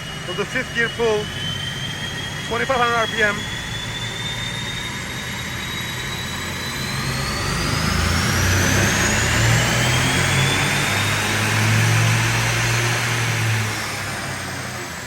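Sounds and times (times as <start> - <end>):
rising whine: 0.0 - 15.0
car engine revving under load: 5.4 - 15.0.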